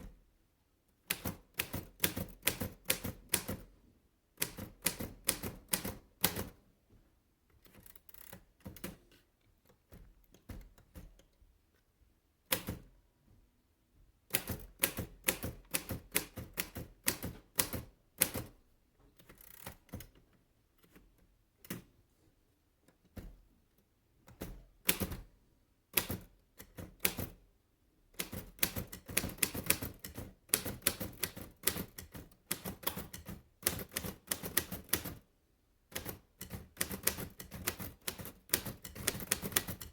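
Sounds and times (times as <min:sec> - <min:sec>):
typewriter keys striking: 0:01.1 - 0:03.7, 0:14.3 - 0:18.6, 0:28.2 - 0:35.2, 0:35.9 - 0:39.9.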